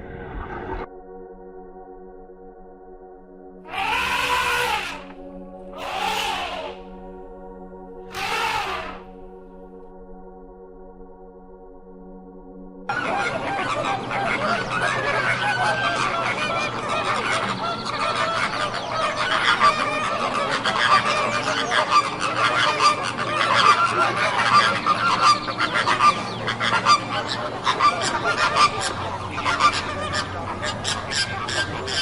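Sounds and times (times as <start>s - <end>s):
flock of birds calling: 3.7s - 5.2s, 5.8s - 6.9s, 8.1s - 9.1s, 12.9s - 32.0s.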